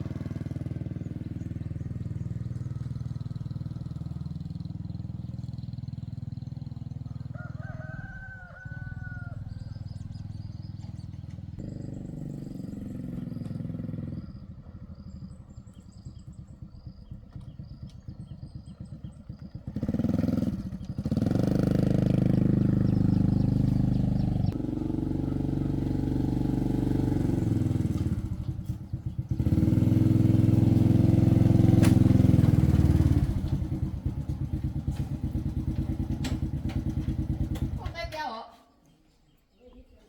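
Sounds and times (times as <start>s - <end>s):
engine idling and revving: 0.0s - 38.1s.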